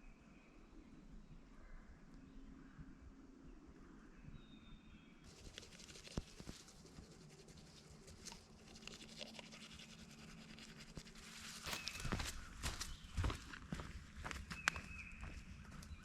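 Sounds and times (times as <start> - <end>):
faint scratching and rustling: 5.3 - 12.9
footsteps: 11.0 - 15.9.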